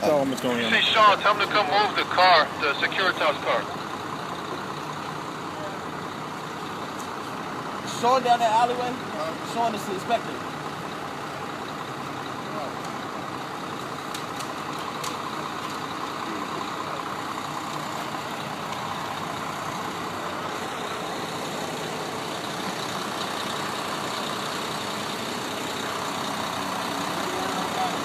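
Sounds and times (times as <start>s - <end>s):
truck engine idling: 0.0s - 28.0s.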